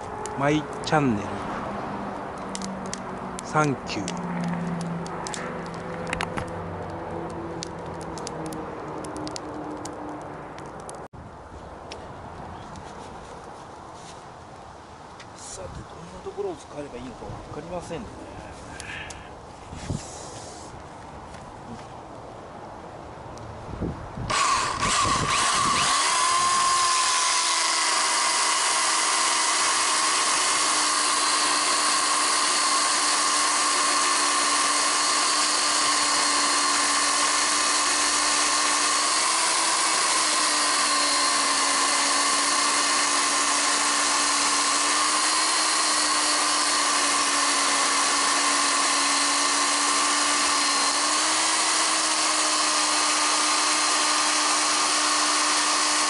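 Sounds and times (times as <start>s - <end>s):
power tool whining: 24.3s - 56.0s.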